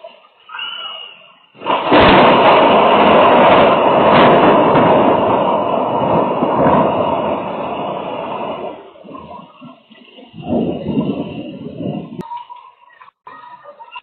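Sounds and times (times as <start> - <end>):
thunderclap rumbling: 1.6 - 12.2.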